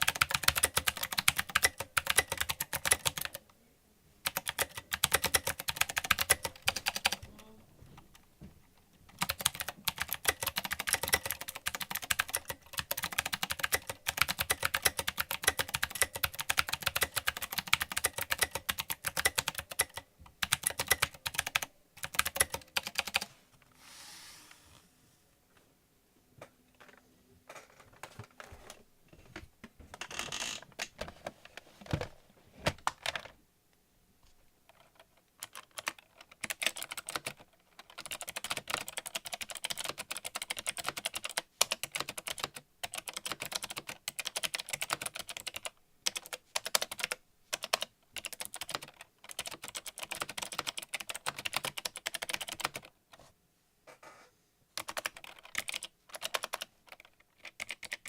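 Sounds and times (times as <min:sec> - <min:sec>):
typing on mechanical keyboard: 0:00.0 - 0:03.4, 0:04.2 - 0:07.4, 0:09.1 - 0:23.3, 0:32.8 - 0:33.3, 0:34.7 - 0:52.9, 0:54.8 - 0:58.0.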